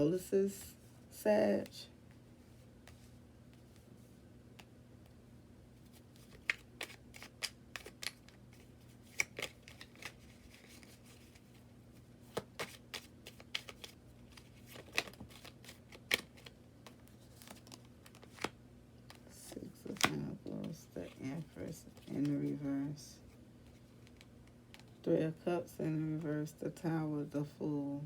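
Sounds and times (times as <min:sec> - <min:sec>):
faint low hum: 0:00.0 - 0:28.0
cards shuffled snapping: 0:05.9 - 0:11.6, 0:12.2 - 0:19.2.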